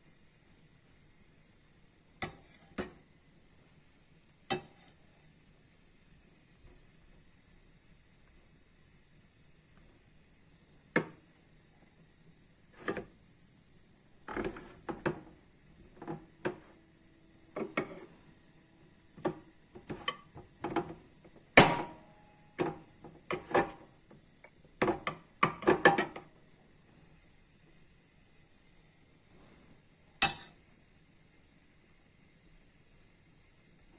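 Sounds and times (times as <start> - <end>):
dishes and utensils clinking: 30.2 - 30.6.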